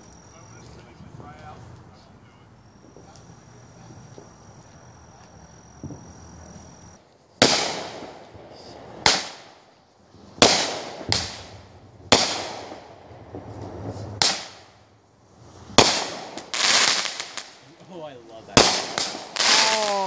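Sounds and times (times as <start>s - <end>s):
firework shells bursting: 5.7s - 20.0s.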